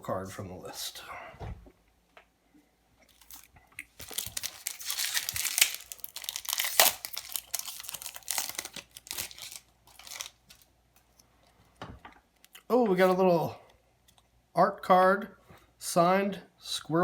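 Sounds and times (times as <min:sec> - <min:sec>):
foil wrapper tearing and crinkling: 0:03.1 - 0:10.7.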